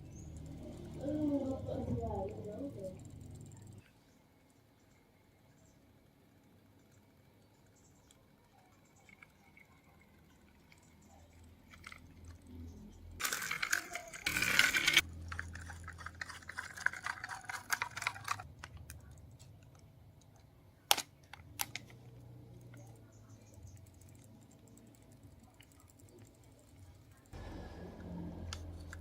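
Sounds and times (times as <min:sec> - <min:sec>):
faint low engine hum: 0:00.0 - 0:29.0
corn kernels pouring and rattling: 0:13.2 - 0:18.5.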